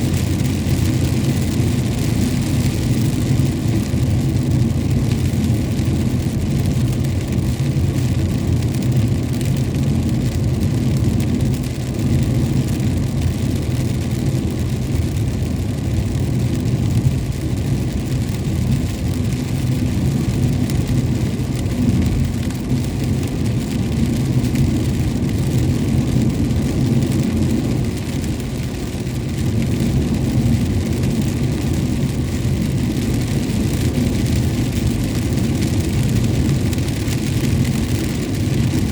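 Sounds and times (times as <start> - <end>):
rain and spray hiss: 0.0 - 38.9
vehicle road and engine rumble: 0.0 - 38.9.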